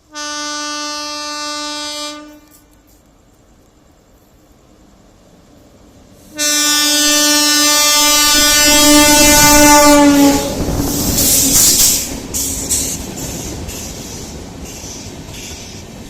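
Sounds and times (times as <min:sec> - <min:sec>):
locomotive horn long blast: 0:00.0 - 0:02.6, 0:06.3 - 0:11.6
train rushing past: 0:03.6 - 0:16.0.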